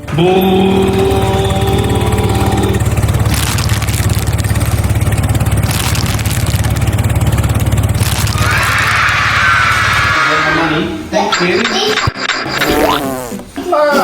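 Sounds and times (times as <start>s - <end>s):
vehicle engine running: 0.0s - 10.4s.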